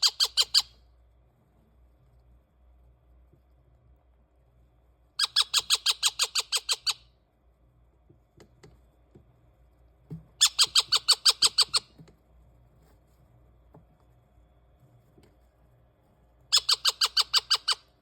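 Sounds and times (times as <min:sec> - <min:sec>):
parakeet chicks calling: 0:00.0 - 0:00.7, 0:05.2 - 0:07.0, 0:10.4 - 0:11.9, 0:16.5 - 0:17.9.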